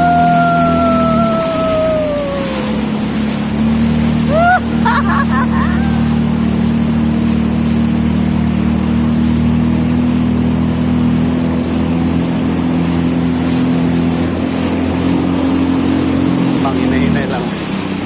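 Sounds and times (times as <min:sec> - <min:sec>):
rush of noise: 0:00.0 - 0:07.3
jet ski engine running: 0:00.0 - 0:18.0.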